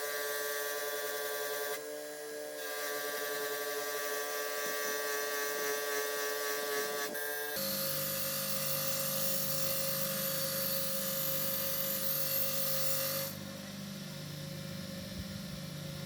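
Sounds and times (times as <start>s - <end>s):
power tool motor whining: 6.5s - 13.4s.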